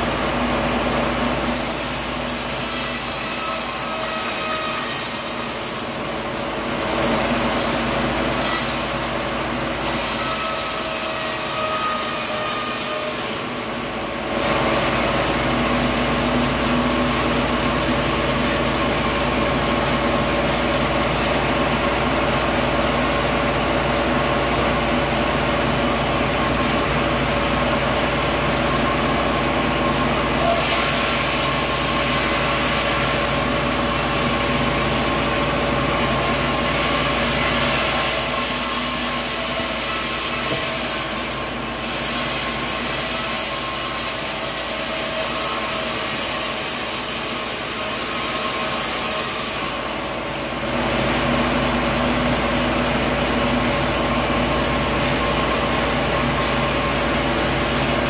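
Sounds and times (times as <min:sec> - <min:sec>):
sawmill motor hum: 0:00.0 - 0:58.0
saw blade cutting wood: 0:01.0 - 0:13.6, 0:29.9 - 0:49.9.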